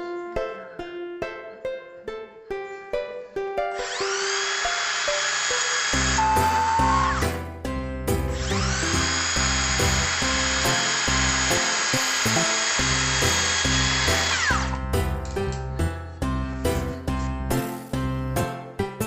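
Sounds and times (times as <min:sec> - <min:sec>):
power tool motor whining: 0:03.7 - 0:07.4, 0:08.2 - 0:14.8.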